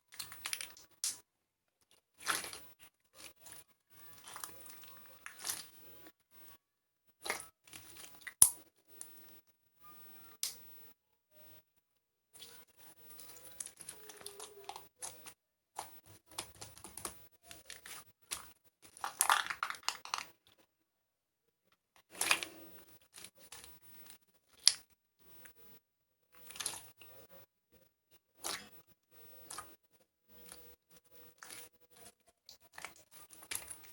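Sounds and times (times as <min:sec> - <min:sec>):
hands squishing slime: 0:00.0 - 0:01.2, 0:02.1 - 0:06.6, 0:07.2 - 0:09.3, 0:12.4 - 0:20.3, 0:22.1 - 0:25.7, 0:26.4 - 0:27.4, 0:28.4 - 0:33.9.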